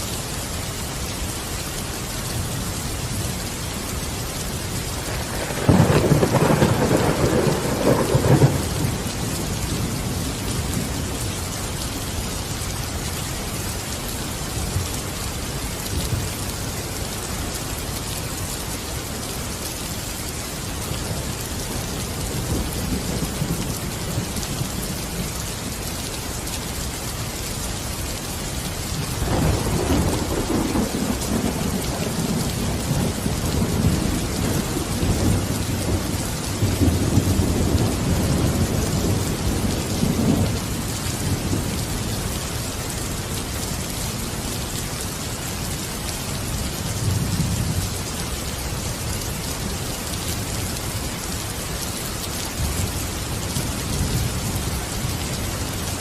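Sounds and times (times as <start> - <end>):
heavy rain falling: 0.0 - 56.0
thunder rumbling: 5.0 - 11.2, 29.0 - 41.8.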